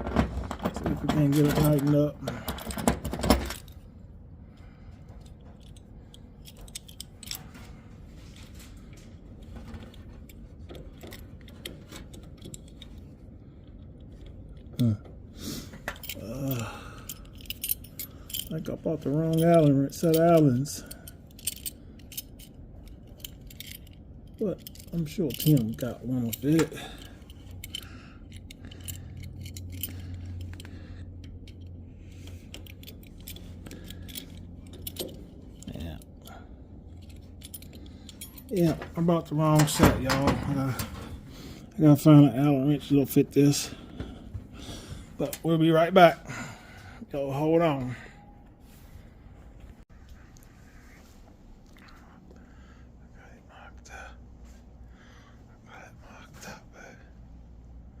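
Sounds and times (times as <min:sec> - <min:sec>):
hand tools clicking and clinking: 0:00.0 - 0:03.8, 0:05.1 - 0:07.8, 0:08.4 - 0:15.1, 0:15.7 - 0:46.4
steady low hum: 0:00.0 - 0:58.0.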